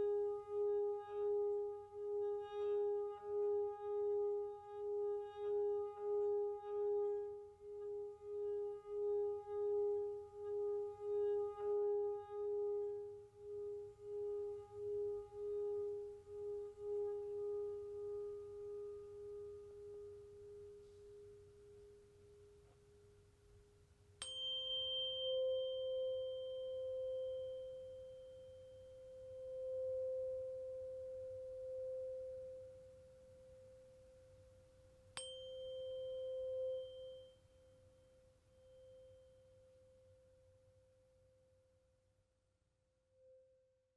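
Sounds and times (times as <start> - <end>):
tuning fork ringing: 0.0 - 23.1, 24.2 - 40.9.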